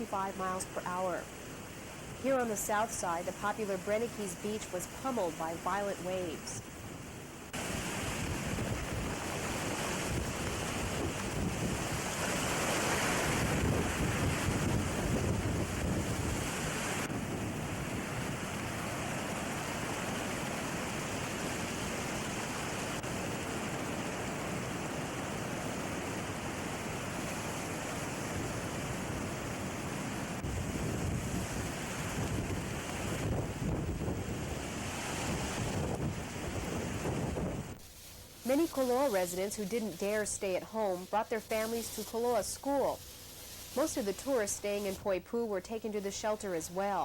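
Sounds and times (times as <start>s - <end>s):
storm surf breaking on beach: 7.5s - 45.0s
wind buffeting microphone: 7.6s - 22.3s, 28.2s - 37.8s.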